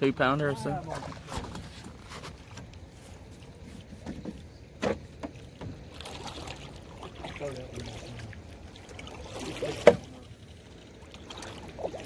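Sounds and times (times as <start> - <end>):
faint water trickle: 2.7 - 12.0
knocks against canoe hull: 4.0 - 5.8.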